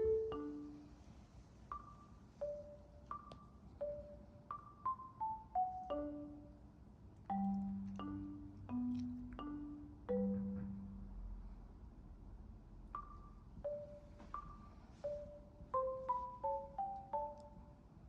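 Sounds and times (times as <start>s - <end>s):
mallet percussion melody: 0.0s - 1.0s, 1.7s - 6.6s, 7.3s - 11.1s, 13.0s - 17.6s.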